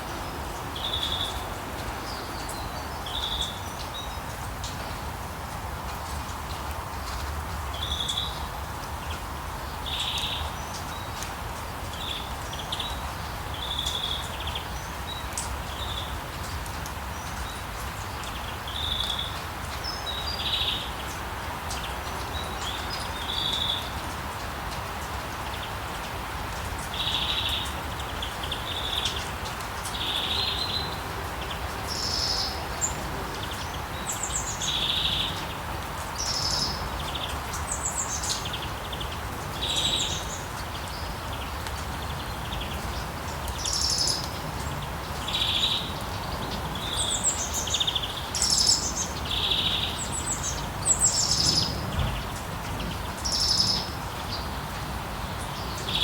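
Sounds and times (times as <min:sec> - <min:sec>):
rain falling on a street: 0:00.0 - 0:56.0
birds chirping: 0:36.2 - 0:56.0.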